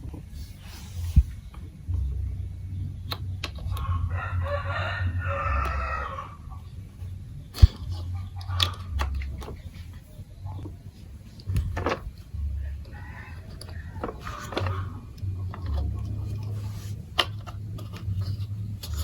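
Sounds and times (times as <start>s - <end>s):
low hum: 0.0s - 19.0s
rooster crowing: 3.9s - 6.5s, 12.6s - 14.9s.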